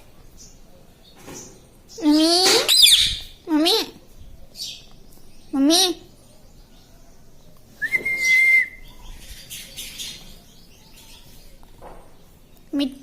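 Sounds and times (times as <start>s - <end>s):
parrot whistle: 7.8s - 8.8s.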